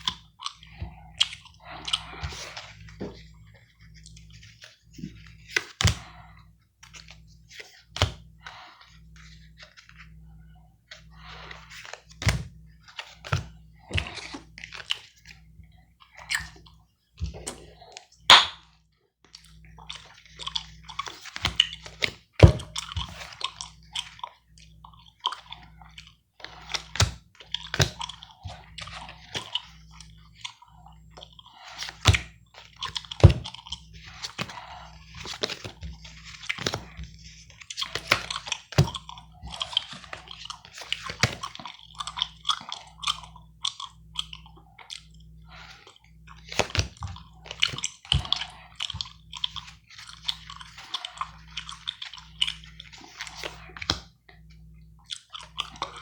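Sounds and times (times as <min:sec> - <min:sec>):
gum chewing: 0:00.0 - 0:03.2, 0:19.8 - 0:56.0.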